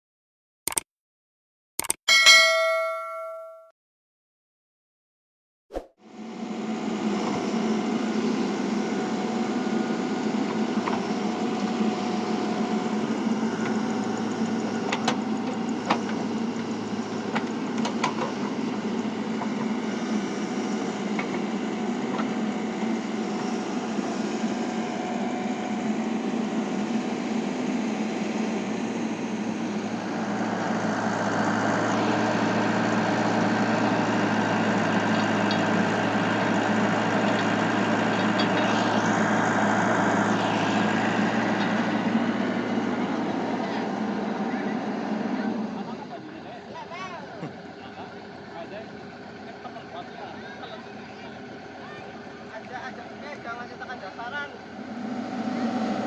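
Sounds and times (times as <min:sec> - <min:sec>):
sharp clicks: 0:00.7 - 0:00.9, 0:01.8 - 0:02.0
model excavator mechanical hum: 0:06.2 - 0:56.0.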